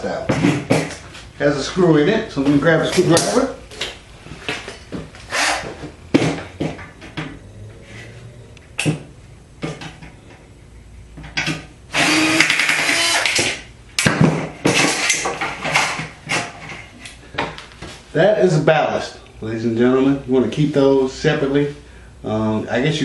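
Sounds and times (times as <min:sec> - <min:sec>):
power drill running: 0:05.3 - 0:05.7, 0:11.9 - 0:13.5.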